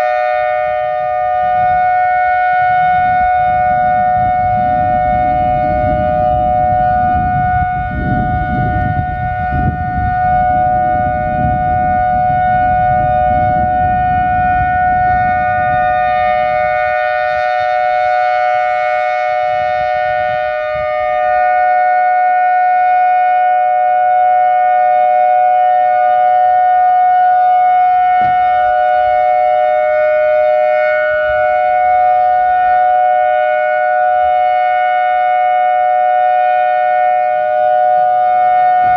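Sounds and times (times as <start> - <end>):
warning siren steady chord: 0.0 - 38.9
low rumbling noise: 0.6 - 21.8.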